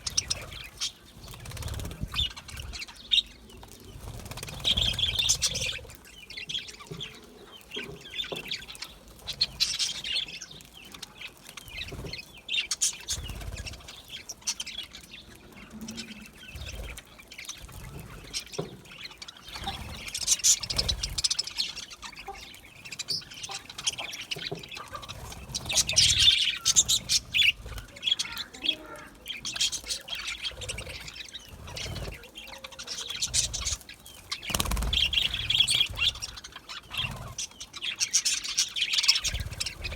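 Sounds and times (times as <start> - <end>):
budgerigars chirping and warbling: 0.0 - 39.9.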